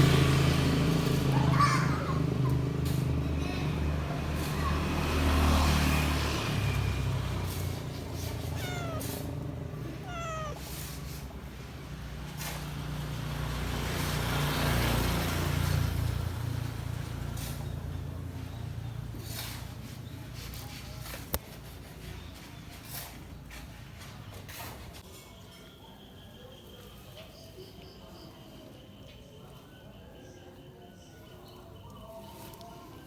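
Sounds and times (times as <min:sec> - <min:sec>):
low rumble of passing traffic: 0:00.0 - 0:33.0
cat meowing: 0:07.5 - 0:11.3.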